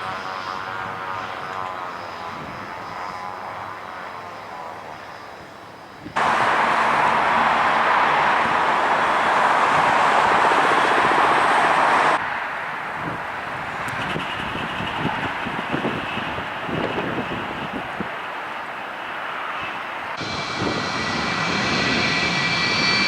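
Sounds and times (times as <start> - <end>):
jet aircraft engines passing: 0.0 - 23.0
loud rushing roar: 6.2 - 12.2, 20.2 - 23.0.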